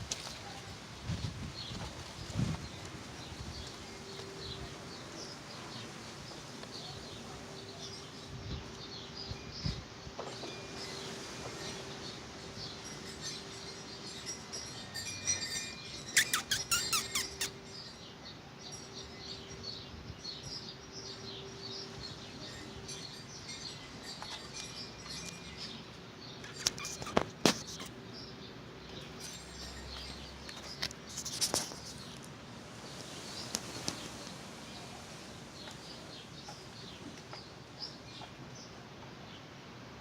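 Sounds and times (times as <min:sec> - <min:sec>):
faint high bird chirping: 0:03.3 - 0:32.2.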